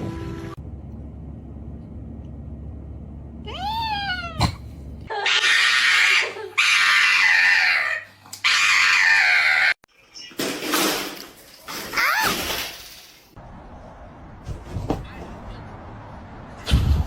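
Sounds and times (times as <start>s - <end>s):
cat meowing: 3.5s - 4.6s
cat yowling: 3.5s - 9.8s.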